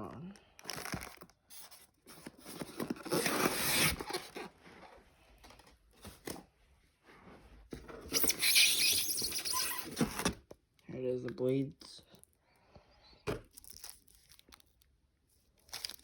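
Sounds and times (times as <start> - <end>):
plastic and cardboard crinkling: 0.6 - 6.4, 13.4 - 16.0.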